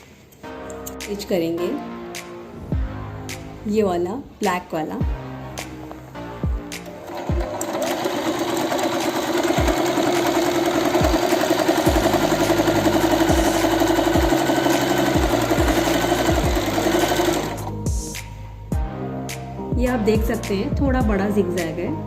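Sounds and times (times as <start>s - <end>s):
sewing machine running: 6.9s - 17.7s.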